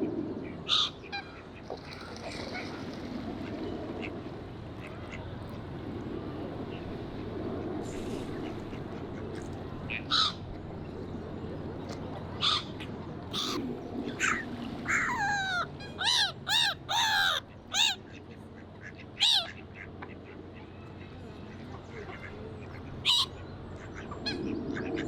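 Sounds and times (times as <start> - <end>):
low background rumble: 0.0 - 25.0
water birds harsh calls: 8.4 - 10.4, 12.3 - 20.0, 22.0 - 25.0.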